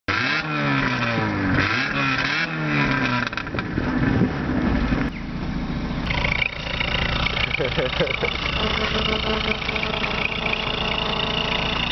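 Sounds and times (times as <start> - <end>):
car engine revving: 0.1 - 11.9
exhaust whistle hissing: 6.1 - 11.9.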